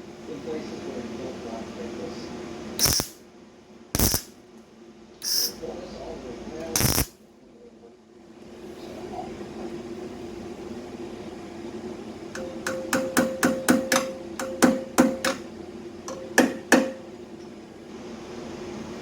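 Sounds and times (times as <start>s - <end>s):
steady hum: 0.0s - 19.0s
hammer striking sheet metal: 12.4s - 15.5s, 16.1s - 17.0s.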